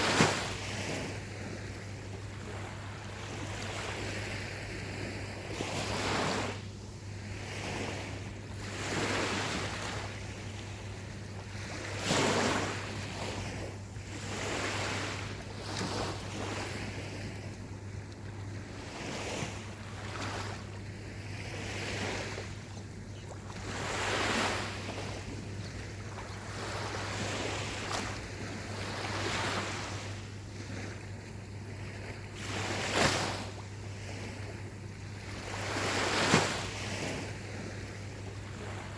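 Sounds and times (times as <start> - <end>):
waves breaking on a beach: 0.0 - 38.9
steady low hum: 12.6 - 36.0.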